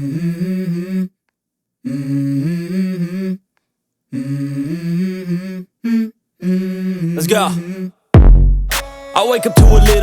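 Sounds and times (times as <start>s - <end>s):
person humming: 1.8s - 3.4s, 4.1s - 8.0s, 9.5s - 10.0s.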